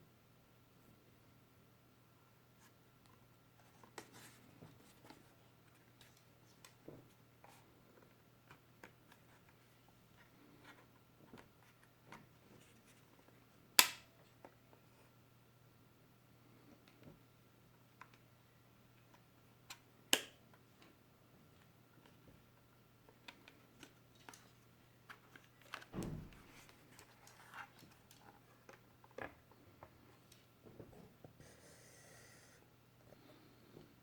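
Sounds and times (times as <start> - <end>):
soft thump: 26.0 - 26.6.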